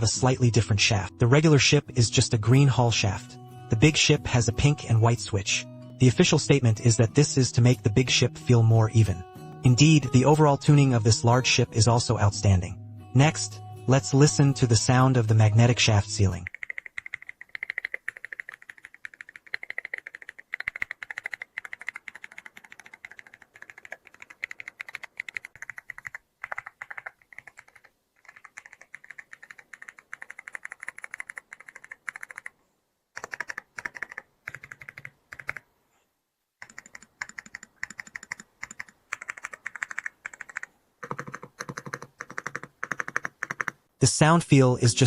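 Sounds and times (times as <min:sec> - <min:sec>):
rapid keyboard typing: 0:16.4 - 0:32.6, 0:33.2 - 0:35.6, 0:36.6 - 0:43.8.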